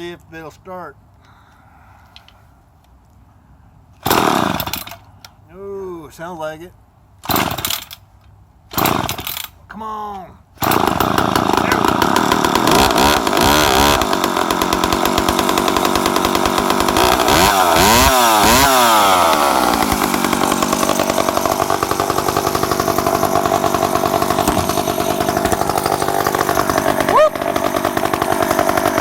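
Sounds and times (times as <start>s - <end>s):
chainsaw engine revving: 4.0s - 5.0s, 7.2s - 7.9s, 8.7s - 9.5s, 10.6s - 29.0s.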